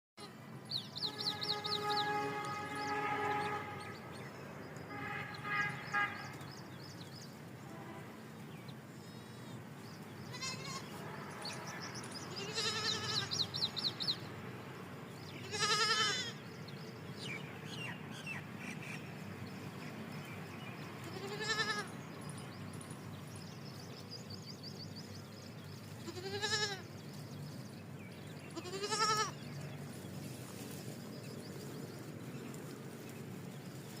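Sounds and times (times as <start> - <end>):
goat kid bleating: 10.3 - 11.0, 12.4 - 13.5, 15.4 - 16.4, 21.0 - 21.9, 26.0 - 26.9, 28.5 - 29.4.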